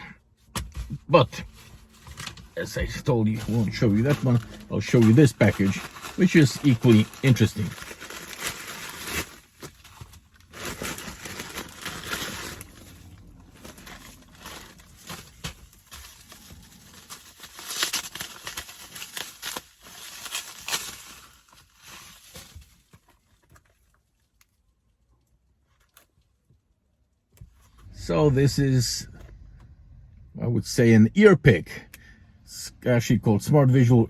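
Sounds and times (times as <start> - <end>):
packaging crinkling and rustling: 0.8 - 26.7.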